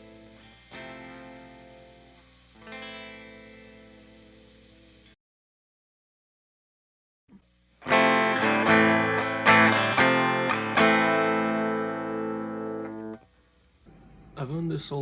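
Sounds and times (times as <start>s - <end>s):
electric guitar strummed chords: 0.0s - 5.0s, 7.8s - 13.2s.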